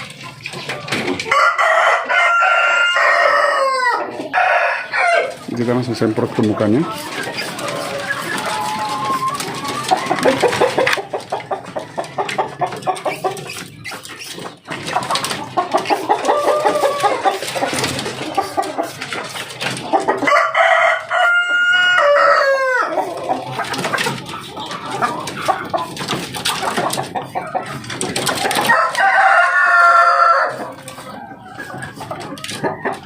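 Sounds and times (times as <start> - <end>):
chickens clucking: 0.0 - 33.0
rooster crowing: 1.3 - 5.4, 20.3 - 23.0, 28.7 - 30.7.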